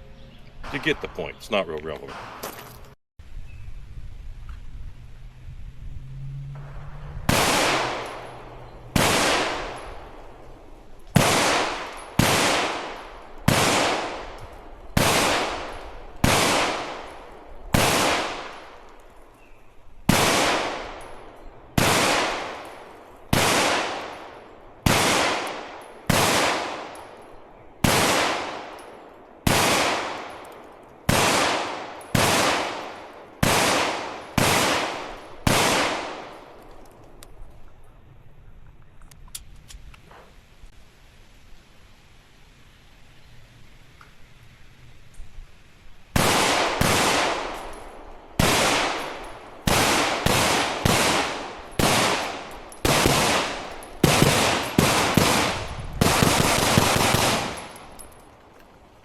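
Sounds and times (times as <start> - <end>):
gunshots with echo: 0.6 - 1.4, 7.3 - 10.2, 11.2 - 14.4, 15.0 - 18.8, 20.1 - 21.0, 21.8 - 27.0, 29.4 - 30.4, 31.1 - 36.5, 48.4 - 58.0.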